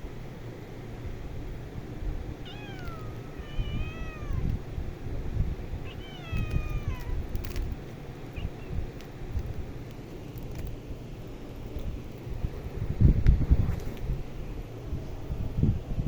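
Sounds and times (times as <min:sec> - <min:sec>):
low rumbling background: 0:00.0 - 0:16.0
cat meowing: 0:02.4 - 0:04.6, 0:05.8 - 0:07.3, 0:08.3 - 0:08.8.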